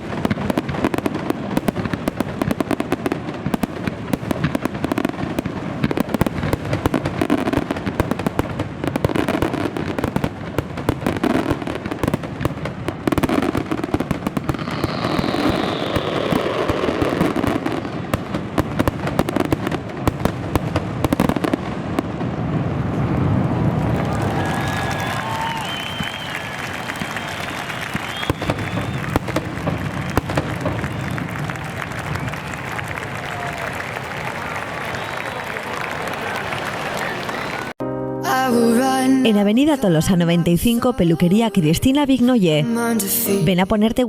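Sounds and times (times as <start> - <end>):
fireworks bangs and crackling: 0.0 - 37.8
firework falling whistle: 13.2 - 18.2, 23.0 - 37.7.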